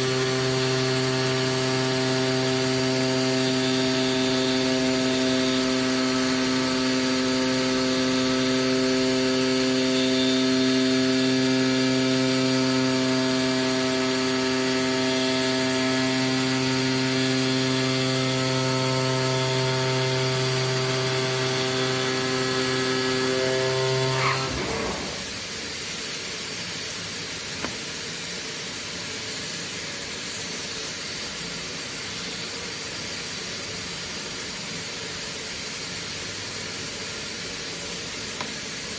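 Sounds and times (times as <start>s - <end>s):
machine electric hum: 0.0s - 25.5s.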